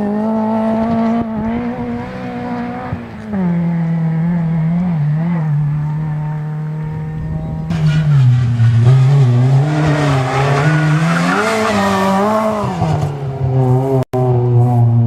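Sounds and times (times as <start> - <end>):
rally car engine revving: 0.0 - 15.0.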